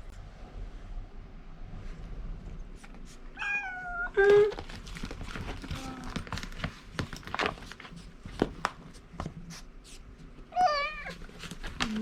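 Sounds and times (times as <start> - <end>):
cat meowing: 3.4 - 4.2, 10.5 - 11.2.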